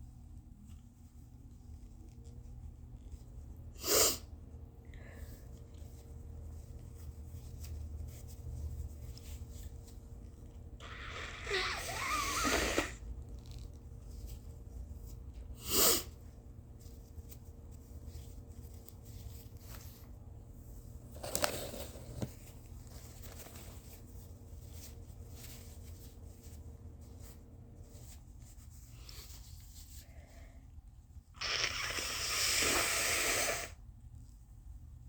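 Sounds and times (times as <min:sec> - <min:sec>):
person blowing nose: 0:03.8 - 0:04.3, 0:10.8 - 0:13.1, 0:15.6 - 0:16.1, 0:31.4 - 0:33.8.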